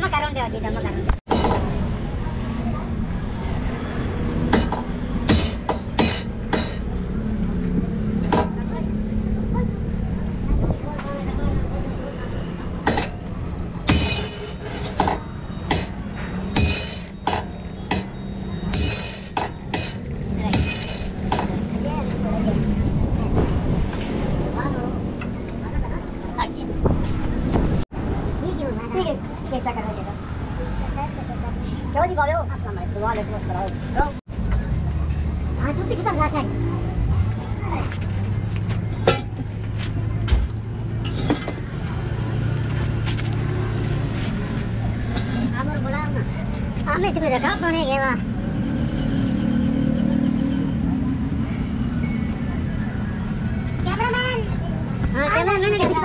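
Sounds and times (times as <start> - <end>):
hammer striking metal: 1.3 - 1.7, 4.5 - 6.9, 12.8 - 13.2, 13.8 - 21.6.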